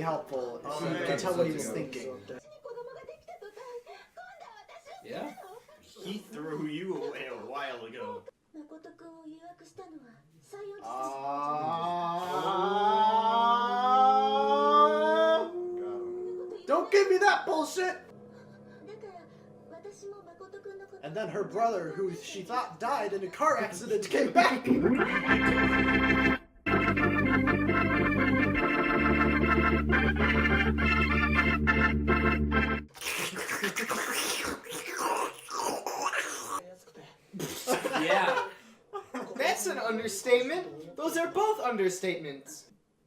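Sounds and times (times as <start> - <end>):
organ playing held chords: 24.6 - 32.9.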